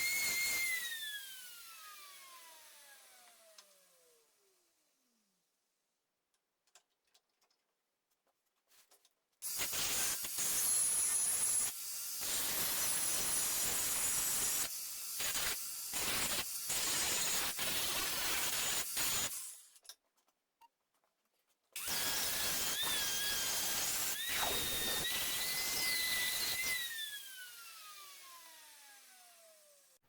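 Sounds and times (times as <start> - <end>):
arc welding crackle and hiss: 9.5 - 19.3
angle grinder whine: 21.8 - 30.0.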